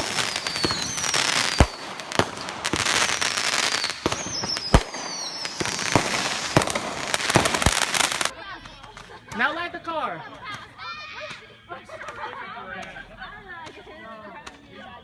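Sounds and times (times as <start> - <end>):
falling firework whistles: 0.0 - 8.3
loud firework bangs: 0.0 - 8.3
fireworks crackling and popping: 0.0 - 14.7.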